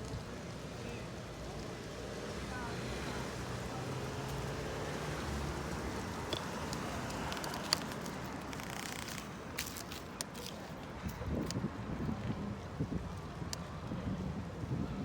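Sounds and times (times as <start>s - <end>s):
bicycle riding rumble: 2.3s - 15.0s
wind buffeting microphone: 10.9s - 15.0s.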